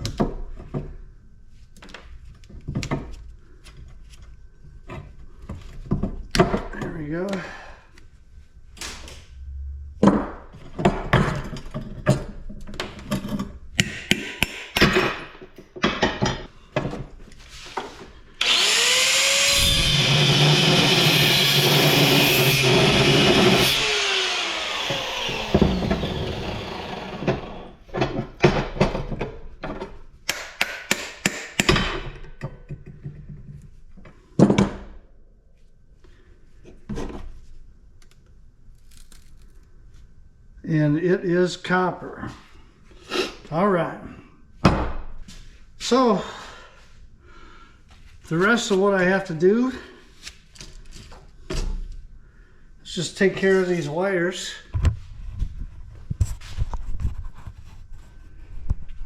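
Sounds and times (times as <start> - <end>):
power tool running: 18.4 - 27.8.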